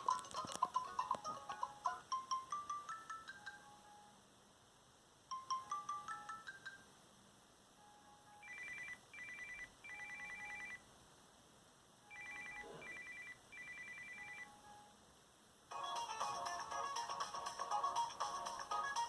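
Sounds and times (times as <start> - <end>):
rising ringtone melody: 0.0 - 4.2, 5.3 - 6.9, 7.8 - 10.8, 12.1 - 14.9, 15.7 - 19.0
phone ringtone two-tone trill: 8.4 - 10.8, 12.1 - 14.8.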